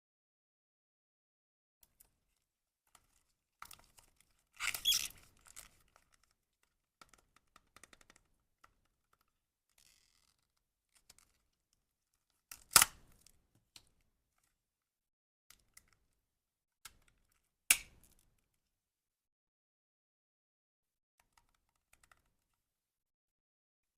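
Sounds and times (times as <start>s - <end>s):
sharp snaps: 17.7s - 18.0s.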